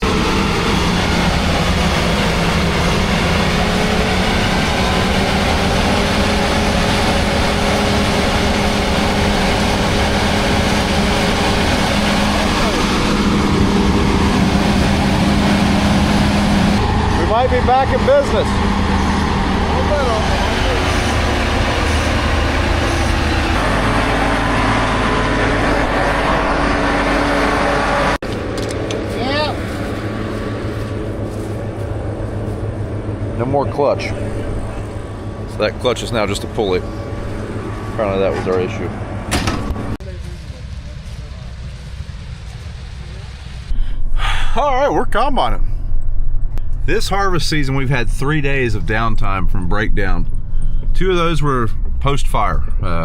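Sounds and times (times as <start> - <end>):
combine harvester engine drone: 0.0 - 53.0.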